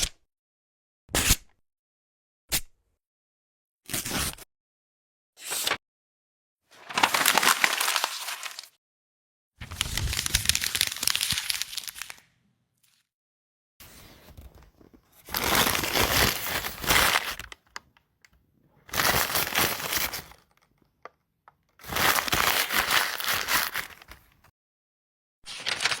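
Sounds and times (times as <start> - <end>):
paper crinkling and crumpling: 6.8 - 8.8, 9.6 - 13.0, 13.9 - 17.8, 18.9 - 20.6, 21.8 - 24.5, 25.5 - 26.0.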